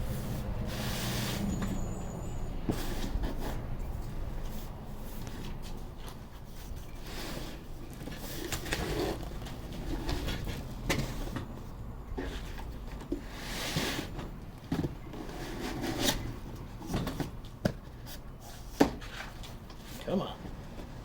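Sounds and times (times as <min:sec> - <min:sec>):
cardboard scraping and sliding: 0:06.4 - 0:11.2, 0:12.2 - 0:14.3, 0:15.2 - 0:16.4.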